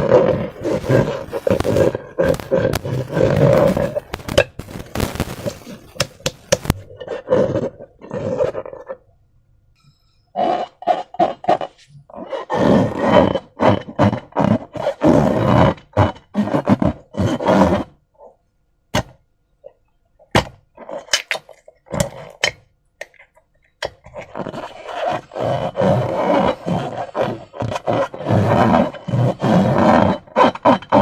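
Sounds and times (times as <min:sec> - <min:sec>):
slime squelching: 0:00.0 - 0:09.0, 0:20.2 - 0:30.8
sharp clicks: 0:00.5 - 0:06.8.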